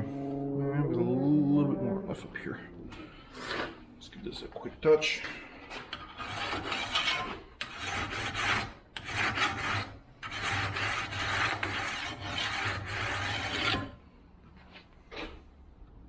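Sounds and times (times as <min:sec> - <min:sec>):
file rasping on metal bar: 0:05.7 - 0:14.0.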